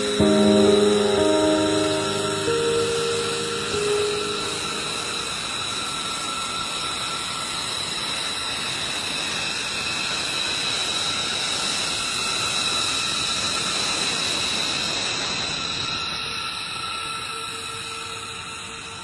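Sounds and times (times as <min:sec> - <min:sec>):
high-pitched whining tones: 0:00.0 - 0:05.6.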